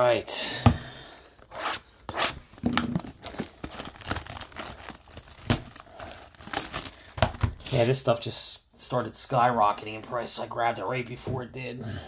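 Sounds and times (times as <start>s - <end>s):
plastic wrapping tearing and crinkling: 2.2s - 7.8s.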